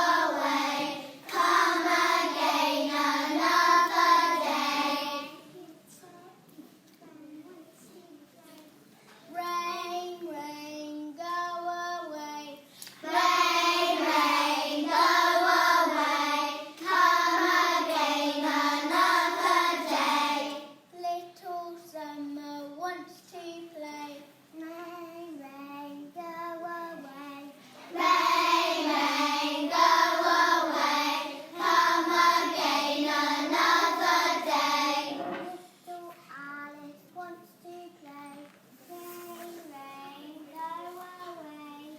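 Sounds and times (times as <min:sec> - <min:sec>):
children singing: 0:00.0 - 0:05.4, 0:13.0 - 0:20.7, 0:27.8 - 0:35.5.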